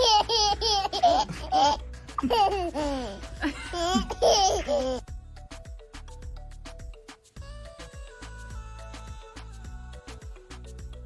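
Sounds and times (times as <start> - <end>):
baby laughing: 0.0 - 5.1
background music: 0.0 - 11.0.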